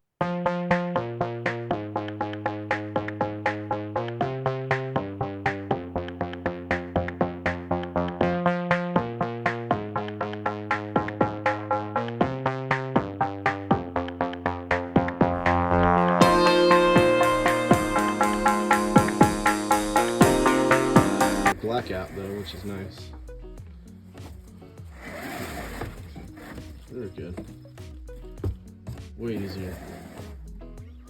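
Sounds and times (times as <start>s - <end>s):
electronic synthesizer music: 0.2s - 21.6s.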